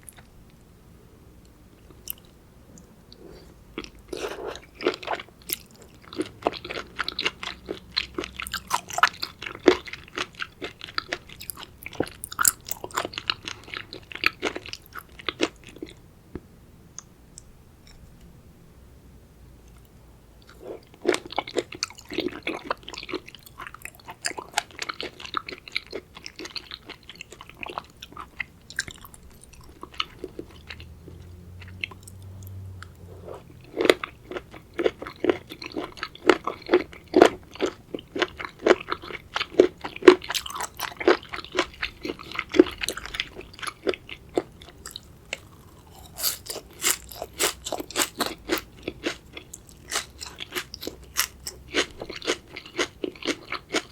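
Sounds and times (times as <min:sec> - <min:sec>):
crunchy wet chewing: 0:20.4 - 0:53.9.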